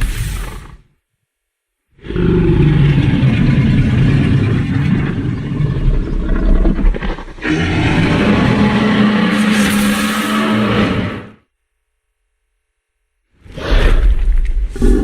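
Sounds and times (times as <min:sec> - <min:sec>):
loud low creature roar: 0:02.0 - 0:11.4.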